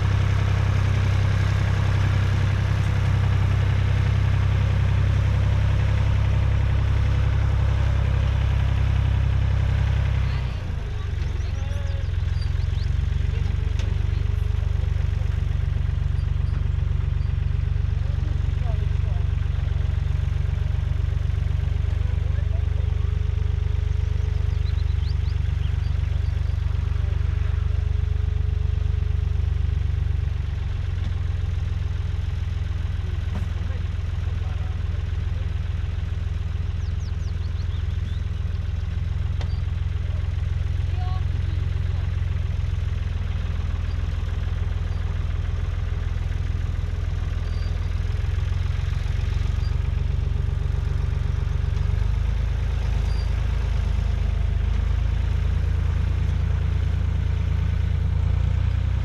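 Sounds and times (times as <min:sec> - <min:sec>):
tractor diesel engine running: 0:00.0 - 0:59.0.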